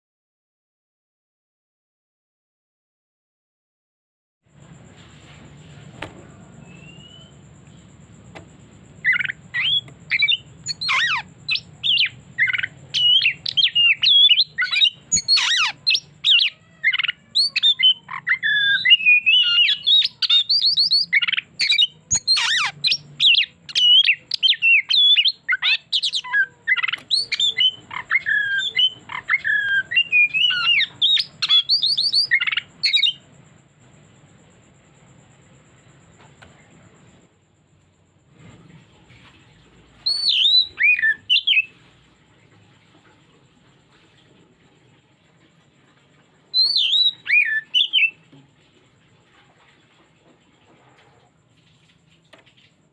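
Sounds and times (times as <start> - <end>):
faint low hum: 4.5 - 52.9
bird singing varied song: 6.2 - 33.3, 40.0 - 41.8, 46.5 - 48.4.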